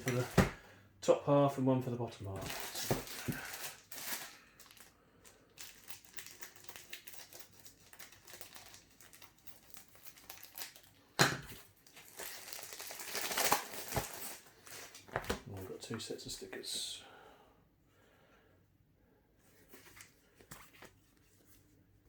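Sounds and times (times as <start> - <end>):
paper and plastic rustling: 0.0 - 0.6, 2.3 - 15.6.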